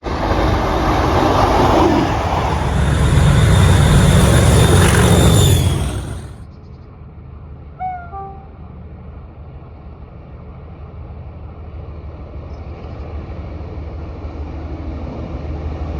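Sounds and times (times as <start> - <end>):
train passing at speed: 0.0 - 6.4.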